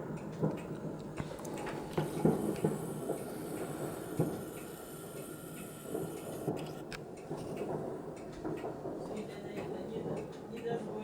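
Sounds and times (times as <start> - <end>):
steady background hiss: 0.0 - 11.0
distant muffled firework bangs: 1.7 - 4.4, 7.2 - 10.5.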